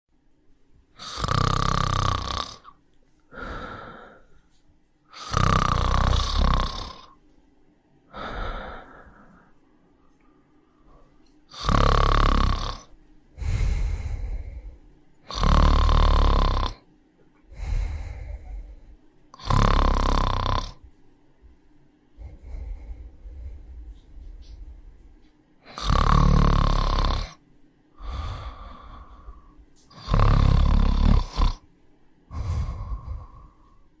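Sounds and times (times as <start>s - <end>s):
puppy snoring: 1.0s - 2.8s, 5.1s - 7.2s, 11.5s - 16.9s, 17.6s - 20.9s, 25.6s - 27.4s, 28.0s - 31.6s
puppy breathing softly: 22.2s - 25.1s.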